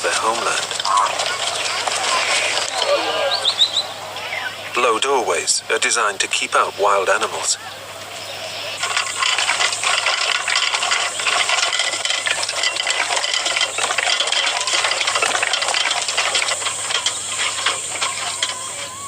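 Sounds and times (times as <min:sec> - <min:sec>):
rapid clicking rattle: 0:00.0 - 0:03.7, 0:08.6 - 0:19.0.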